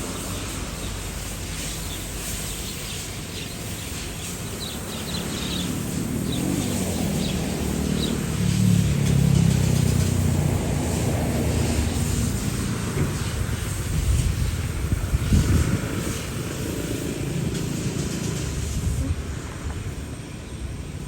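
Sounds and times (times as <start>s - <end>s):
airplane flying past: 0.0s - 21.0s
small birds chirping: 0.4s - 9.9s.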